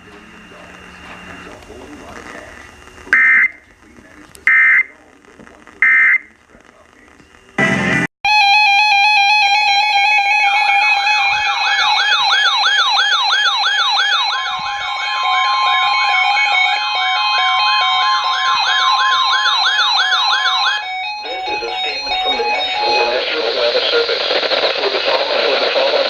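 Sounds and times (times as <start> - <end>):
steady electronic alert tones: 3.1 - 3.6, 7.6 - 23.9
falling siren-like wail: 8.3 - 23.5.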